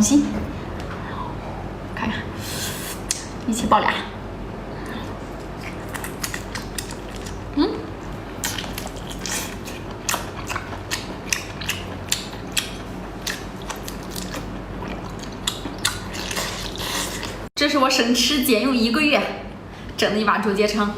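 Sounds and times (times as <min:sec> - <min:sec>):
crunchy chewing: 0:05.0 - 0:17.5.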